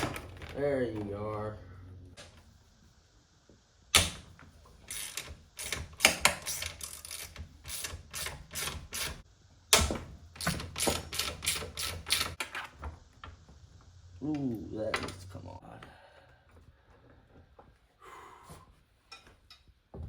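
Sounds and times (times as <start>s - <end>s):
ratchet wrench clicking: 4.9s - 9.2s, 10.4s - 12.4s.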